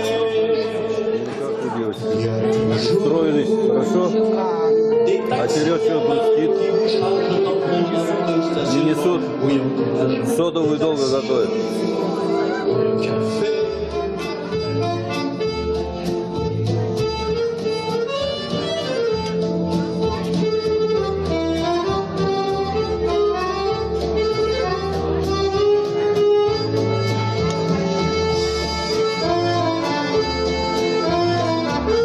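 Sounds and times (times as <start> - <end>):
free-reed instrument melody: 0.0 - 32.0
guitar: 0.0 - 32.0
steady bass line: 11.5 - 32.0.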